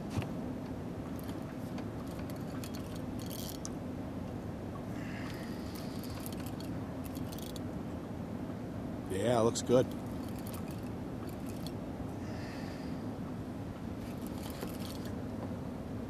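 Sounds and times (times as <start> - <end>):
steady low hum: 0.0 - 16.0
light metallic rattles: 1.1 - 3.8, 5.3 - 7.7, 9.7 - 11.8, 14.0 - 15.2
fishing reel clicking: 2.3 - 3.7, 5.7 - 7.6, 14.1 - 15.1.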